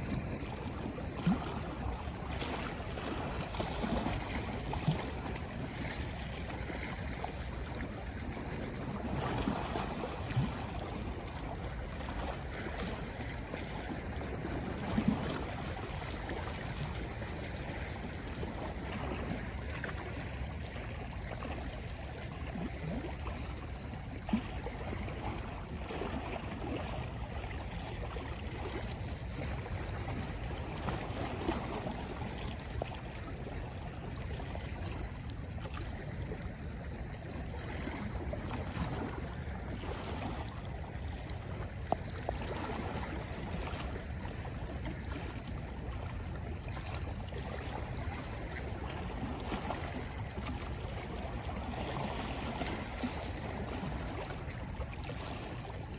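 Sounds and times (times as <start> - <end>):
sea water lapping at shore: 0.0 - 55.9.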